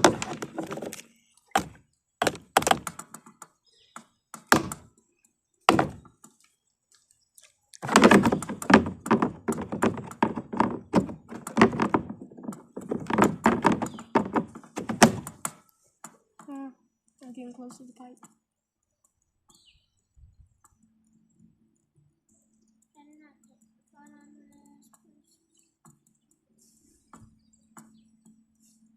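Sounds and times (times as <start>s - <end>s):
knocks and thumps: 0.0s - 3.3s, 5.7s - 6.1s, 7.8s - 15.6s.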